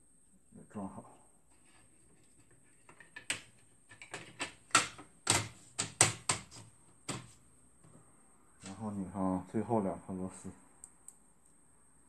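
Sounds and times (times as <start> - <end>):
hard plastic parts clacking: 2.2 - 7.3.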